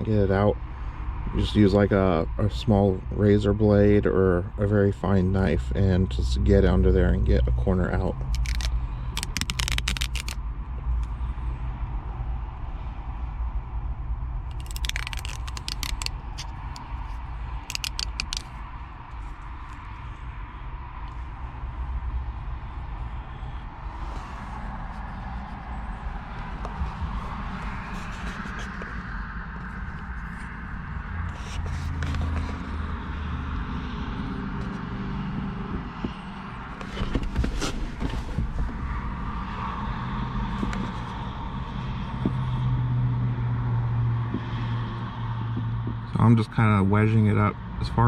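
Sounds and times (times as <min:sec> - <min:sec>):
steady low rumble: 0:00.0 - 0:48.0
liner peeling with sharp clicks: 0:08.2 - 0:10.4, 0:14.5 - 0:18.6.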